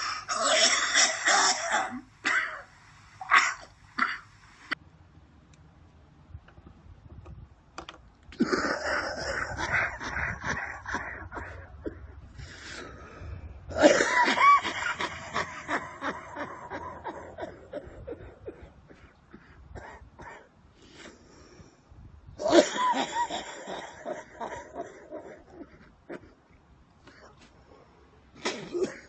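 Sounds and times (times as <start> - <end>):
man coughing: 13.7 - 15.8, 22.4 - 26.4, 28.4 - 29.0.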